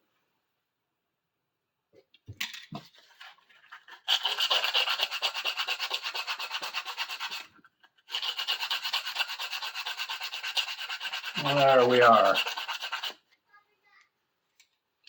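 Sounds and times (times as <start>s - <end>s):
hand sanding with sandpaper: 3.2s - 7.5s, 8.1s - 13.2s.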